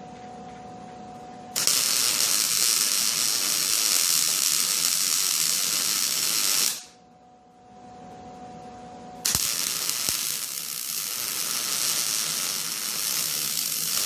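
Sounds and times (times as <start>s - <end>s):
arc welding crackling hiss: 1.6s - 7.0s, 9.2s - 14.0s.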